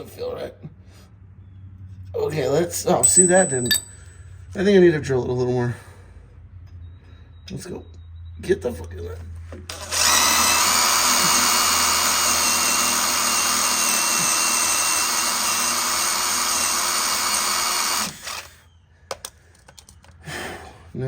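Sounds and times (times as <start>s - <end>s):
power drill whining: 9.7s - 18.7s.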